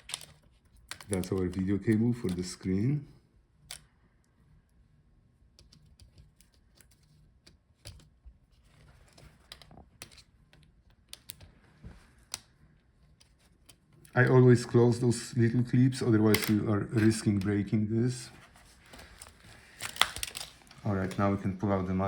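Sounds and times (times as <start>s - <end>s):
cable connectors clicking: 0.0s - 2.8s, 3.6s - 3.9s, 9.2s - 14.4s, 16.1s - 17.6s, 18.9s - 21.4s.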